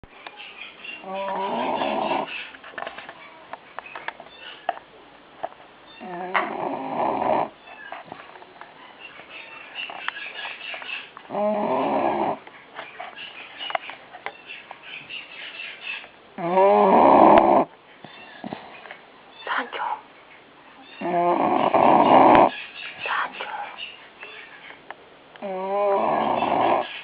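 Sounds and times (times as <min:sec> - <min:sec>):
pet animal snoring: 0:01.0 - 0:02.4, 0:06.0 - 0:07.6, 0:11.3 - 0:12.4, 0:16.4 - 0:17.7, 0:21.0 - 0:22.5, 0:25.4 - 0:27.0.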